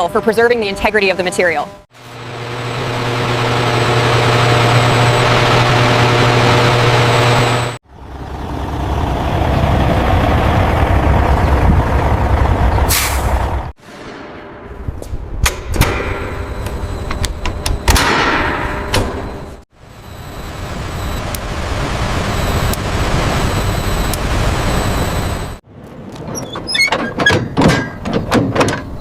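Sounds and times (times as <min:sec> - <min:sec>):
industrial machinery hissing and humming: 0:02.0 - 0:07.8, 0:15.8 - 0:25.6.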